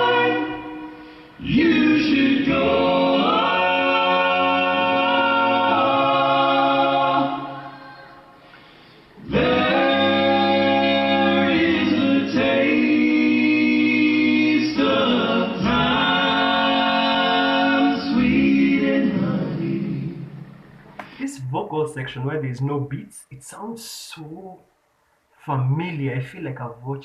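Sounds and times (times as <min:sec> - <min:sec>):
male a cappella group singing: 0:00.0 - 0:07.8, 0:09.2 - 0:20.4.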